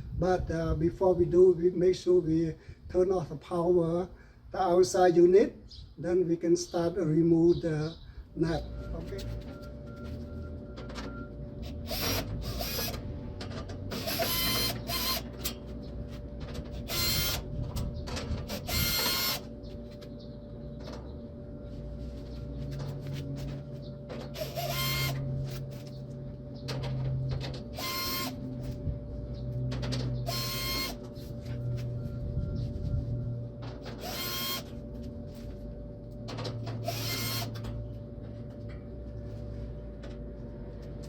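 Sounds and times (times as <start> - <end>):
low hum: 7.9 - 41.0
electric drill-driver whirring: 11.6 - 13.0, 13.9 - 15.6, 16.8 - 17.5, 18.5 - 19.5, 24.3 - 25.2, 27.8 - 28.5, 30.3 - 31.0, 34.0 - 34.8, 36.8 - 37.6.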